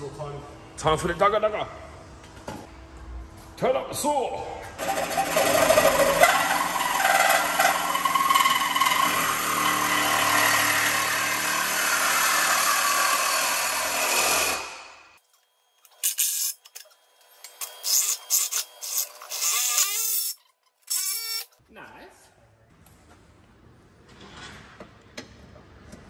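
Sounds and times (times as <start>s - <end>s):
reciprocating saw cutting: 4.8s - 15.2s.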